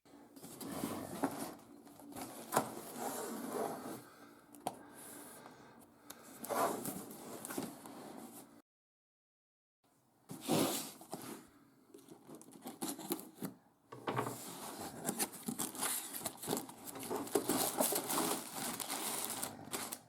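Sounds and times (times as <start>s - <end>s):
plastic packaging crinkling and tearing: 14.8s - 20.0s.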